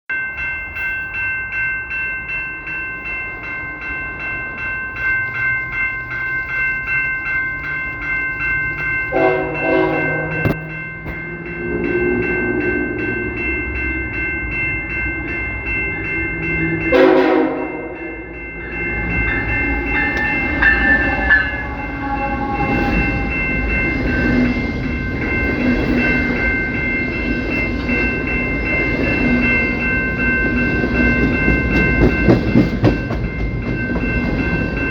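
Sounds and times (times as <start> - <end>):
bell ringing rapidly: 0.1 - 34.9
train wheel rumble: 3.0 - 34.9
locomotive horn blasts: 9.1 - 10.6, 16.9 - 17.8.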